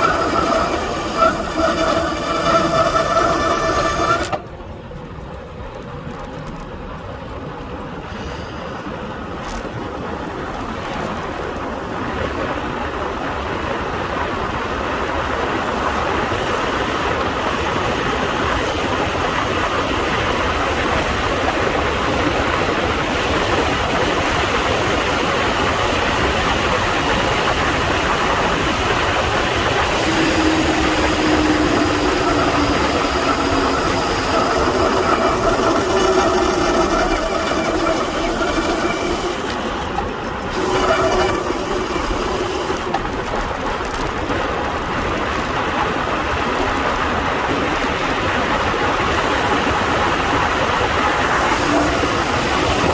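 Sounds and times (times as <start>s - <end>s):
disc brakes droning: 0.0s - 4.5s, 27.4s - 44.4s, 49.2s - 52.9s
bicycle tyre noise: 0.0s - 13.0s, 15.3s - 52.9s.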